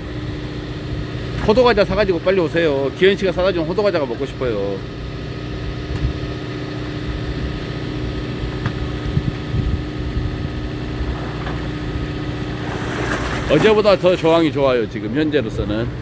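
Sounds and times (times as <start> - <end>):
boat engine rumbling: 0.0 - 5.8, 7.0 - 16.0.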